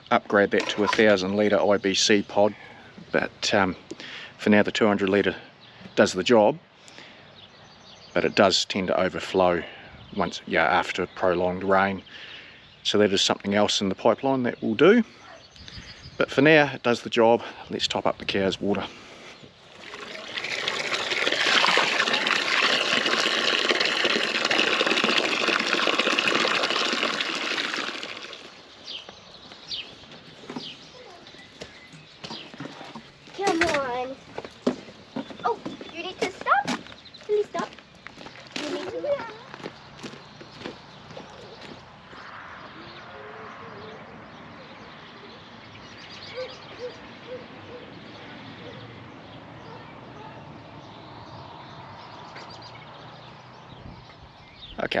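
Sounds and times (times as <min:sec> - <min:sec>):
water pouring: 0:19.7 - 0:28.8.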